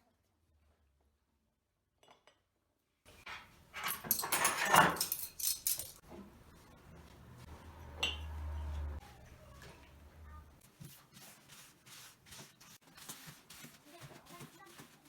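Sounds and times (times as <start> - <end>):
kitchenware clinking and clattering: 3.1 - 6.4.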